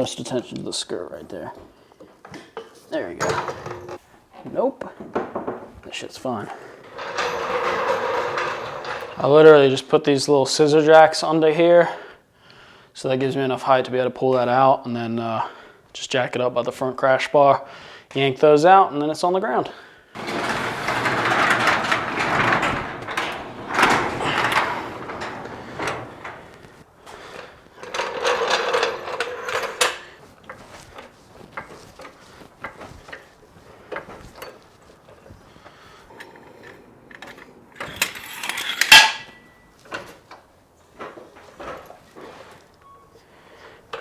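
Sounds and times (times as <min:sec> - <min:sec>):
metal jacks scraping on concrete: 0:06.8 - 0:09.5, 0:20.2 - 0:35.0, 0:35.7 - 0:40.3.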